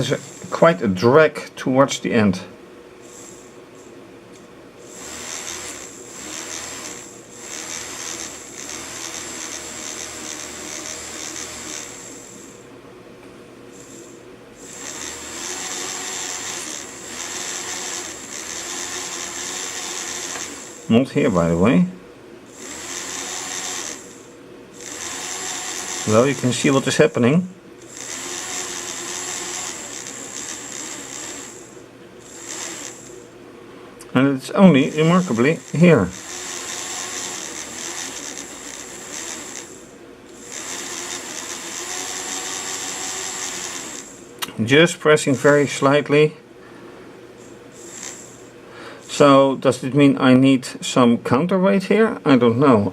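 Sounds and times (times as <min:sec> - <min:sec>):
electric motor whirring: 0:00.0 - 0:00.8, 0:04.8 - 0:12.6, 0:13.7 - 0:21.5, 0:22.5 - 0:27.2, 0:27.8 - 0:33.3, 0:34.6 - 0:44.5, 0:47.4 - 0:49.5.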